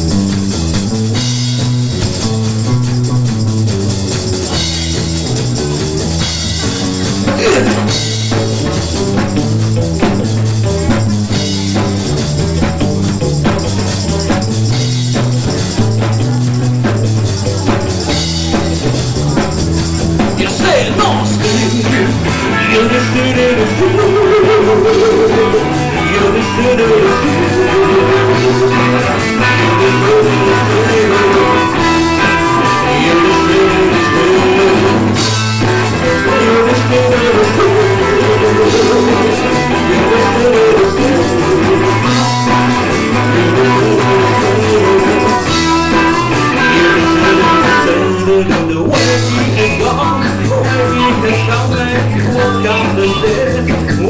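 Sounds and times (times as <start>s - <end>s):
live rock band playing: 0.0s - 54.0s
repeating guitar melody: 0.0s - 54.0s.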